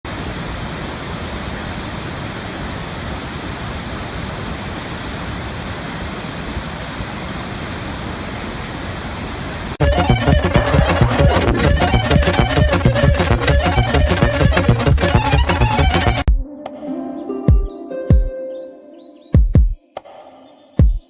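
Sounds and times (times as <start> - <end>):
steady rushing noise: 0.1 - 16.3
loud music with a beat: 9.8 - 16.5, 17.5 - 18.4, 19.4 - 19.8.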